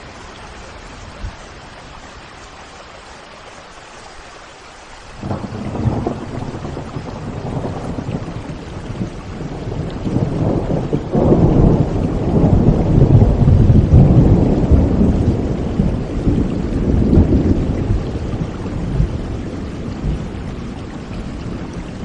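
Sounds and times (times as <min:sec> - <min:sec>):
rain: 0:00.0 - 0:22.0
thunder rumbling: 0:05.2 - 0:22.0.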